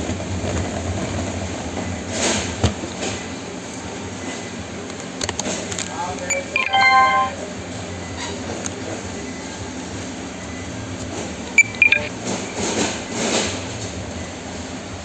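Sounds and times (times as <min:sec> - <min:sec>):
barcode scanner beeping: 0:06.3 - 0:07.4, 0:11.6 - 0:12.2.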